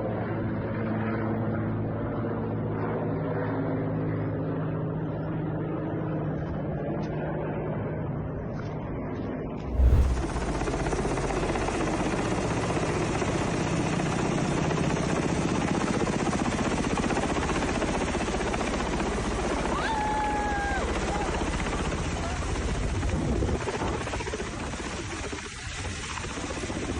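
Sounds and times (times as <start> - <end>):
helicopter rotor and engine: 0.0 - 8.2, 9.7 - 26.9
loud thump: 9.7 - 10.6.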